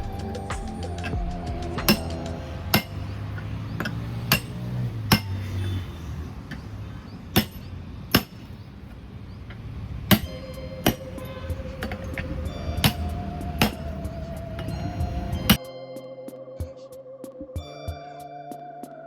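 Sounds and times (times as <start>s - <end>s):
hammer striking truck wheel: 0.5s - 5.6s, 7.4s - 8.6s, 10.1s - 11.2s, 11.8s - 15.6s.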